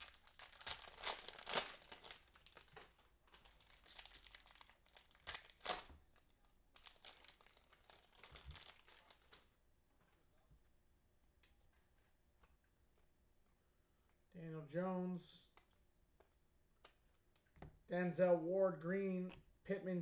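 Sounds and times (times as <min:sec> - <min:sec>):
cellophane wrapper crinkling and tearing: 0:00.0 - 0:09.5.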